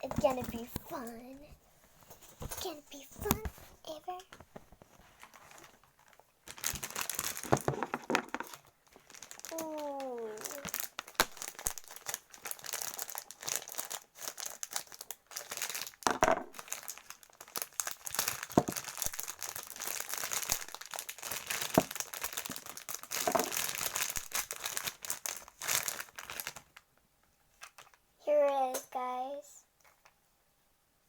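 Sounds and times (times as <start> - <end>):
packaging crinkling and rustling: 3.2 - 26.9, 27.5 - 28.0.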